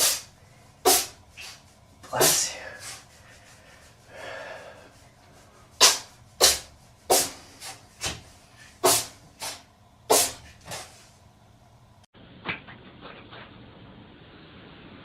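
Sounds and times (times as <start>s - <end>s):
cat sneezing: 0.0s - 1.6s, 5.8s - 7.7s, 8.8s - 10.8s.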